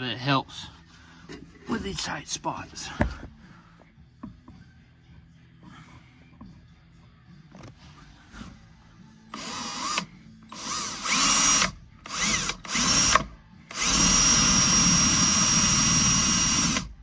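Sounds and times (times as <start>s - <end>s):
power drill whining: 9.3s - 17.0s.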